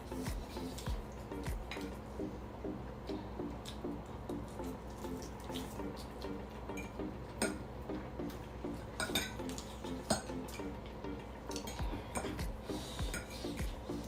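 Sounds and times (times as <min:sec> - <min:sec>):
quiet background music: 0:00.0 - 0:14.0
cutlery clinking against a plate: 0:09.0 - 0:10.6, 0:11.5 - 0:12.4.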